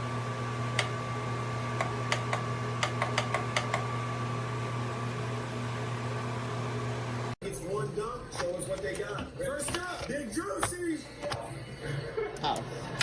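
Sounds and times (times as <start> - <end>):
space heater humming: 0.0 - 7.6.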